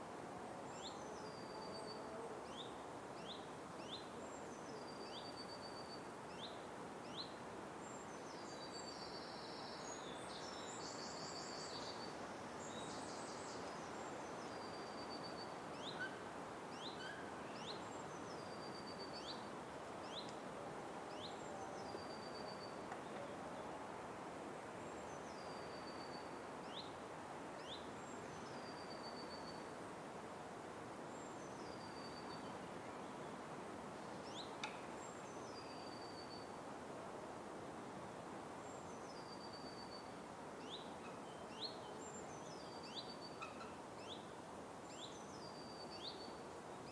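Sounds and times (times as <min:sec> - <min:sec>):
faint hiss: 0:00.0 - 0:46.9.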